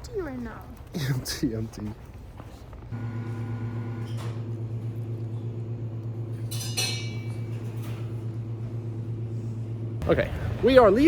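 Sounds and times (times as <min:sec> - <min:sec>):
bright clink: 0:06.5 - 0:07.4.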